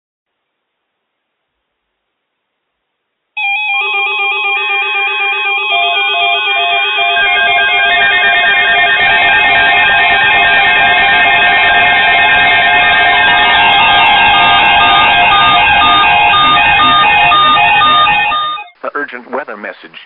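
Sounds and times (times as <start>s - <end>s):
warbling alert tones: 3.4s - 18.7s
electronic alarm beeps: 3.4s - 18.8s.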